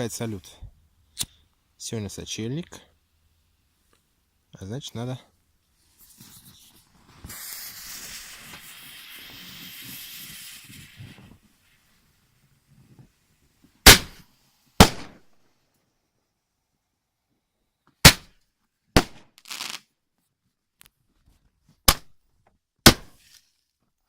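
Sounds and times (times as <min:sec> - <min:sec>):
firework fuse hissing: 0:05.9 - 0:12.6, 0:19.0 - 0:19.9
loud firework shots: 0:07.2 - 0:11.4, 0:13.8 - 0:14.2, 0:14.8 - 0:15.3, 0:18.0 - 0:18.3, 0:19.0 - 0:19.8, 0:22.9 - 0:23.2.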